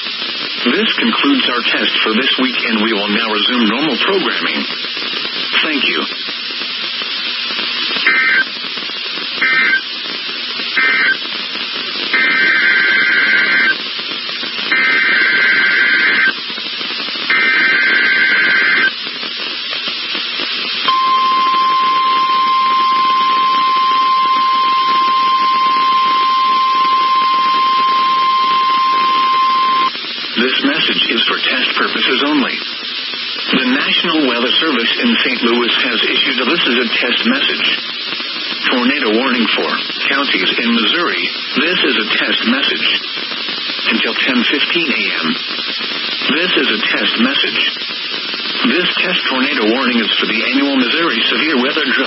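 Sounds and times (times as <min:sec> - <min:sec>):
radio hiss: 0:00.0 - 0:52.0
screechy data bursts: 0:12.1 - 0:13.8, 0:14.6 - 0:16.4, 0:17.2 - 0:18.9
steady alarm tone: 0:20.9 - 0:29.9.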